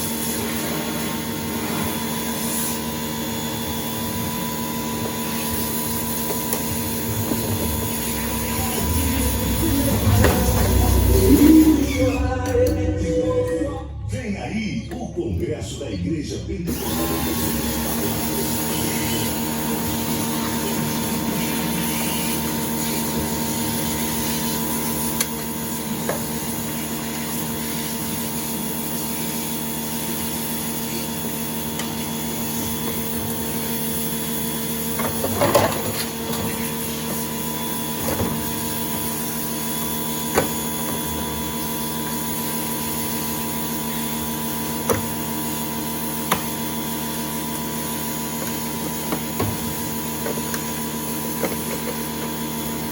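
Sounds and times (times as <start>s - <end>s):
steady background hum: 4.0s - 22.2s.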